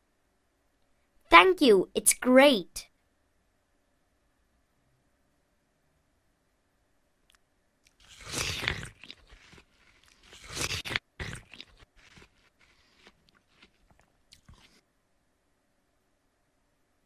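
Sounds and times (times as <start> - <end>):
crunching and chewing: 7.8 - 14.8
loud crunchy bites: 8.0 - 14.7.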